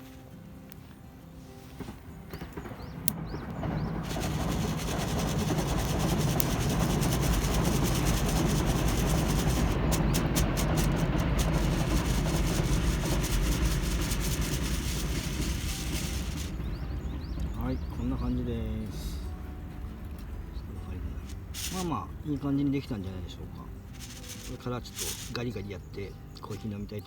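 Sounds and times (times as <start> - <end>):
coffee beans rattling: 4.0 - 16.6, 21.2 - 22.0, 23.9 - 25.5
scattered clicks: 4.0 - 16.6.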